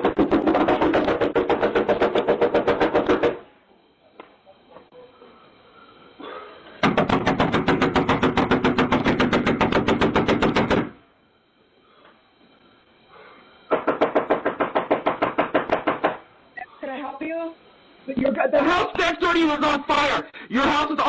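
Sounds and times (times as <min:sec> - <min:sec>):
rapid knocking on a door: 0:00.0 - 0:03.4, 0:06.8 - 0:10.9, 0:13.7 - 0:16.2.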